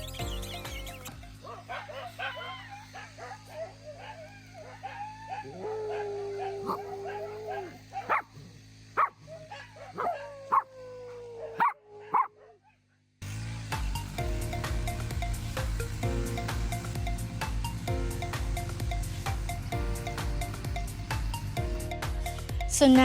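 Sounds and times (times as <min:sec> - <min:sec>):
dog whining: 0:00.0 - 0:12.8
dog yelping: 0:01.4 - 0:12.8.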